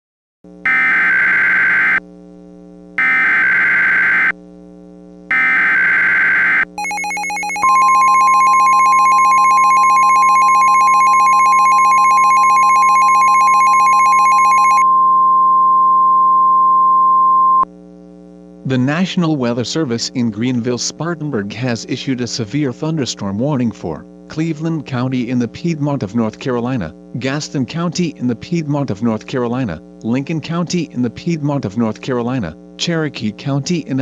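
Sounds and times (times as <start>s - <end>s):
steady warning alarm tone: 0.6s - 2.0s, 3.0s - 4.4s, 5.3s - 15.2s
screeching digital data tones: 3.0s - 4.3s, 5.3s - 14.9s.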